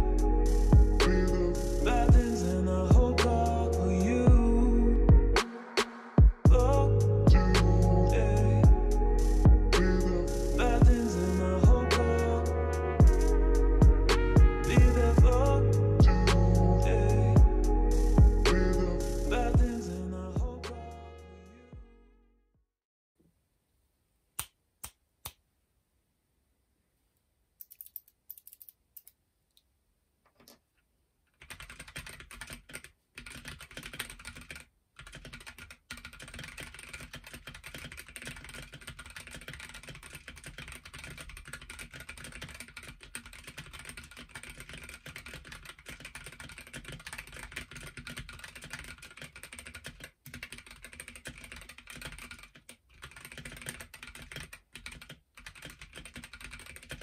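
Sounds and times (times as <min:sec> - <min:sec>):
mechanical keyboard typing: 0:27.6 - 0:29.1, 0:31.4 - 0:57.0.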